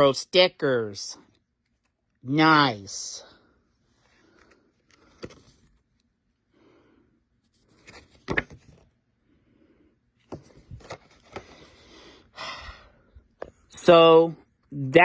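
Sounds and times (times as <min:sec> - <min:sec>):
paper rustling: 0:04.0 - 0:06.1, 0:07.5 - 0:09.0, 0:10.2 - 0:11.9.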